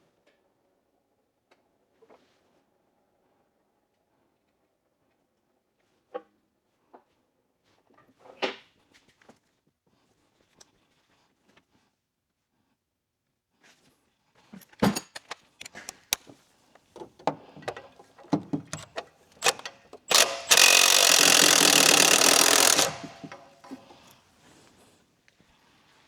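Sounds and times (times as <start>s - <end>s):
metal tools clinking: 14.8s - 16.2s, 17.0s - 24.1s
impact wrench running: 17.0s - 24.1s.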